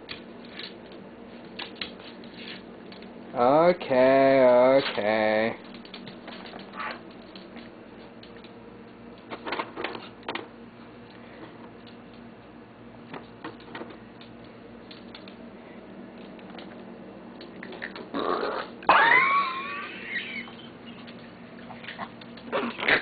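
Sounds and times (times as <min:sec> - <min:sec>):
light clicks and taps: 0:13.1 - 0:15.4.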